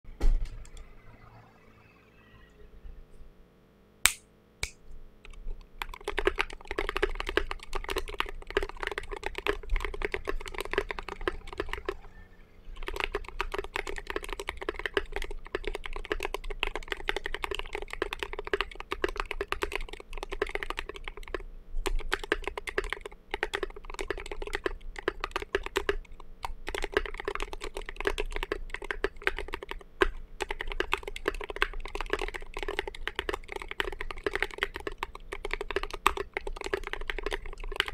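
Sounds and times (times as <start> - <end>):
fast typing on mechanical keyboard: 5.3 - 37.9.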